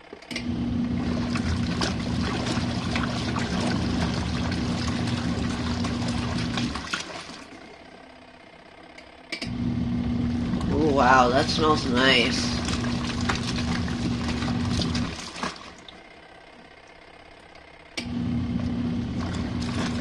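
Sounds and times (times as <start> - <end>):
washing machine motor humming: 0.0 - 20.0
water sloshing: 0.8 - 7.9, 10.3 - 16.2, 18.6 - 20.0.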